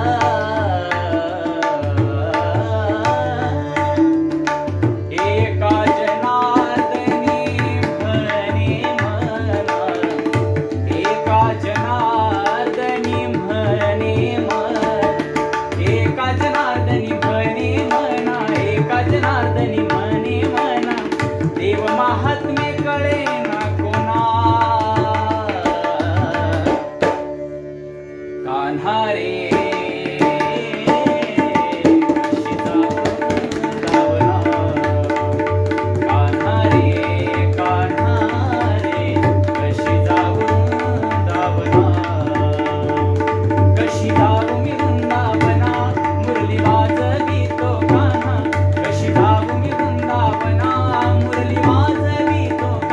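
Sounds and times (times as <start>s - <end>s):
person singing: 0.0s - 27.5s, 28.4s - 52.9s
tabla: 0.0s - 52.9s.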